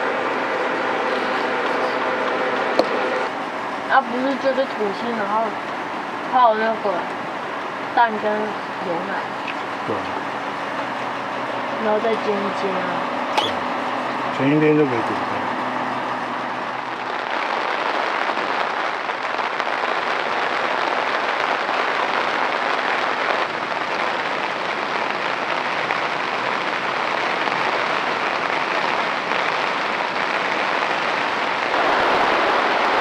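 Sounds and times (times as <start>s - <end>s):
rain falling steadily: 0.0s - 33.0s.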